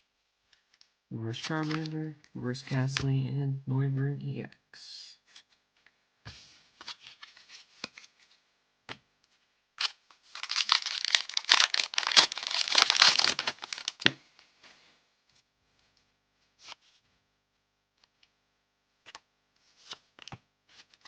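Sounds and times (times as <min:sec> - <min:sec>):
foil wrapper tearing and crinkling: 0:09.8 - 0:14.1.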